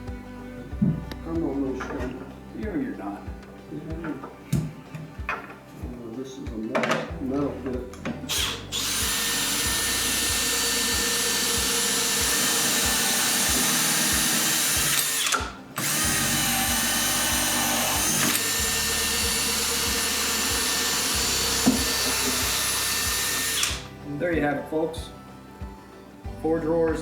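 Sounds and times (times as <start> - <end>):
electric drill running: 8.3 - 23.9.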